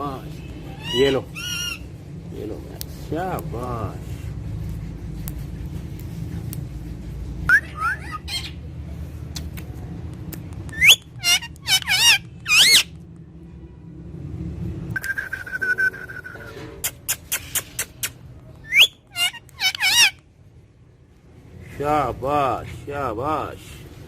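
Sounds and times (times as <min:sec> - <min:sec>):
parrot whistling and squawking: 0:00.6 - 0:02.0, 0:07.4 - 0:08.7, 0:10.7 - 0:12.9, 0:15.0 - 0:20.2.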